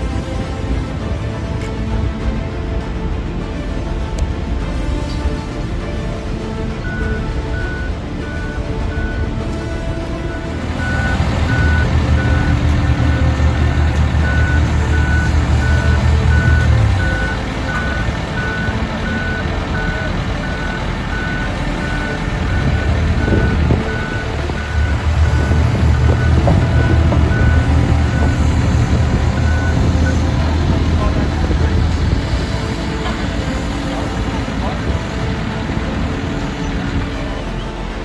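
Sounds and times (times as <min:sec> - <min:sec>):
diesel engine running: 0:03.8 - 0:38.0
vehicle backup alarm beeping: 0:06.8 - 0:09.4, 0:10.3 - 0:37.4.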